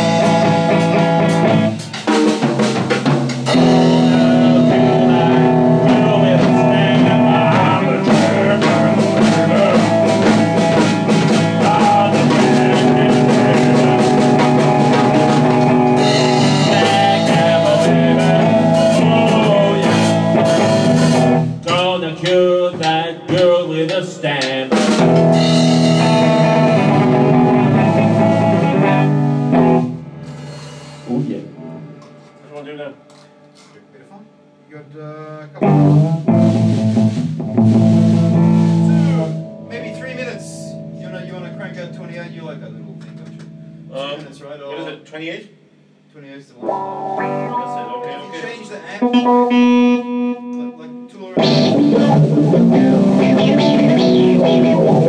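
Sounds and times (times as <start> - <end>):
drums: 0.0 - 33.9, 35.5 - 44.4, 45.6 - 55.0
blues guitar: 0.0 - 34.6, 35.3 - 44.4, 46.6 - 55.0.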